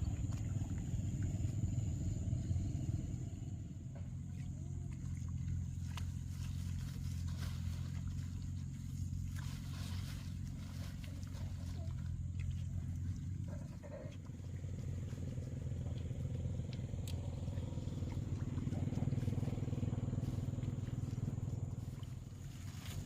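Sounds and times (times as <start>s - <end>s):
small engine humming: 0.0s - 23.0s
faint clicks: 15.8s - 18.2s.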